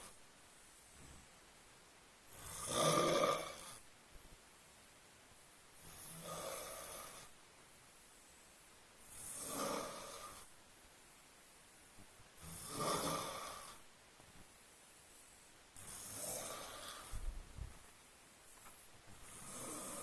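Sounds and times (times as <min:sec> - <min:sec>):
person snoring: 0:02.3 - 0:03.8, 0:05.8 - 0:07.3, 0:09.1 - 0:10.5, 0:12.4 - 0:13.8, 0:15.8 - 0:17.2, 0:19.2 - 0:20.0.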